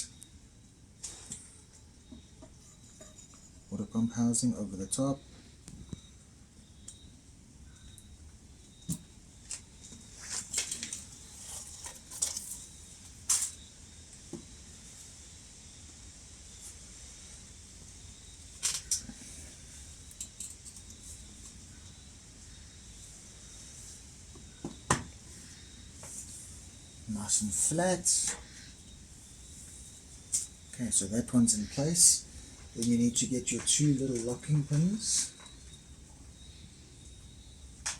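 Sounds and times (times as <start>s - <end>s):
faint steady hiss: 0.0s - 37.9s
metal parts clicking and scraping: 20.1s - 21.0s.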